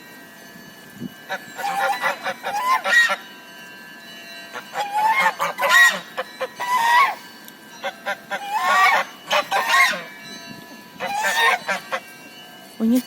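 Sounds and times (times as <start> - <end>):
geese honking: 1.3 - 3.2, 4.5 - 7.2, 7.8 - 10.2, 11.0 - 12.1.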